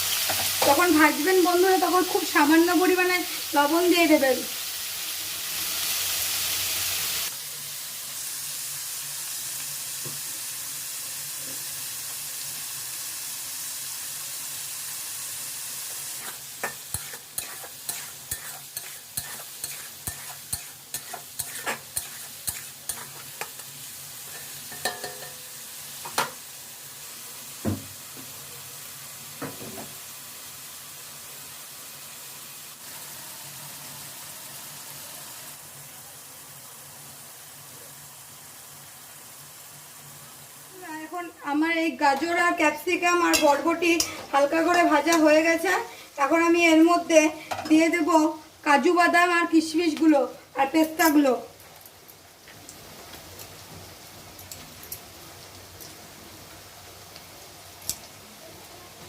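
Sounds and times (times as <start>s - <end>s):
vegetables sizzling in oil: 0.0s - 59.0s
spatula scraping and tapping pan: 16.2s - 23.7s, 24.3s - 25.4s, 43.3s - 45.3s
loud knocks on pan: 27.6s - 27.9s.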